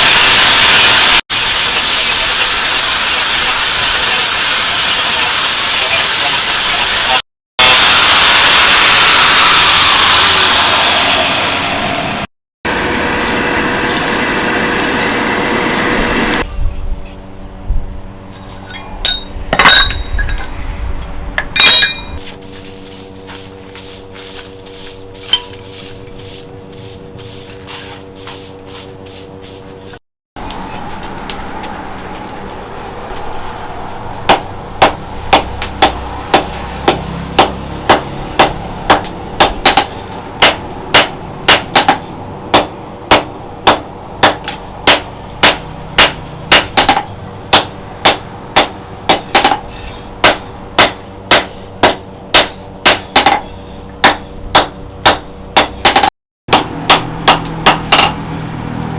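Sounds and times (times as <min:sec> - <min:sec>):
power tool abrading steel: 0:00.0 - 0:16.4
hand scraping steel blade: 0:21.6 - 0:30.0, 0:49.1 - 0:54.4.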